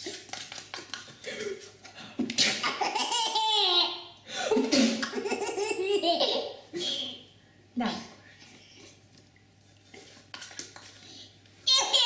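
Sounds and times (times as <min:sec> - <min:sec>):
baby laughing: 0:02.6 - 0:04.1, 0:05.0 - 0:06.6, 0:11.7 - 0:12.0.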